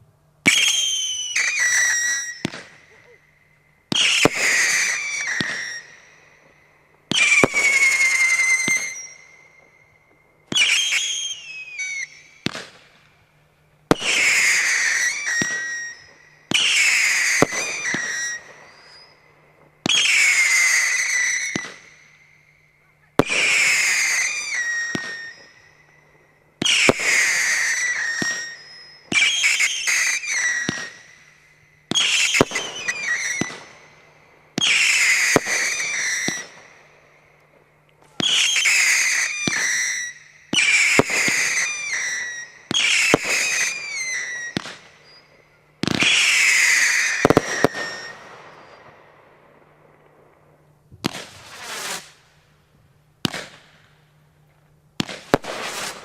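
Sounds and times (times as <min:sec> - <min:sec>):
falling firework whistle: 0:00.4 - 0:13.2, 0:13.9 - 0:50.4, 0:51.0 - 0:52.3, 0:55.0 - 0:56.0
firework pops: 0:12.4 - 0:12.9, 0:39.4 - 0:39.8, 0:47.2 - 0:48.1, 0:50.9 - 0:52.1, 0:53.2 - 0:53.9, 0:55.0 - 0:56.0.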